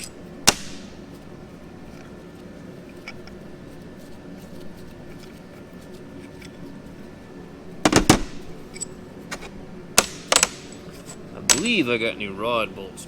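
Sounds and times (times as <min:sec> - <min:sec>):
metal parts knocking on bench: 0:07.8 - 0:11.8.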